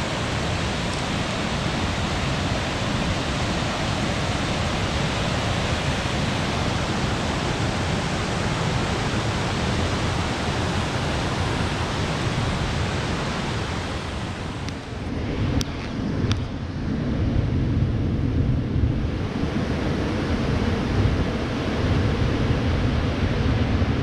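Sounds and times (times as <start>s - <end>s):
waterfall roaring: 0.0s - 15.1s.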